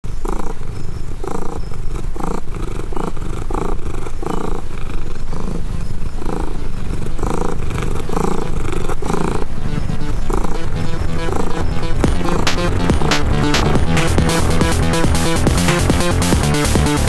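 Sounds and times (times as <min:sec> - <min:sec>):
cat purring: 0:00.0 - 0:17.0.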